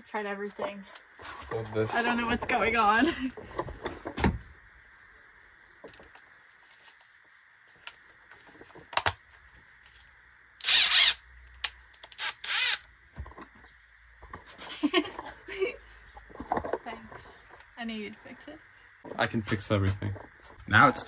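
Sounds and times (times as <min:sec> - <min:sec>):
mechanical clicks: 0:10.6 - 0:12.9.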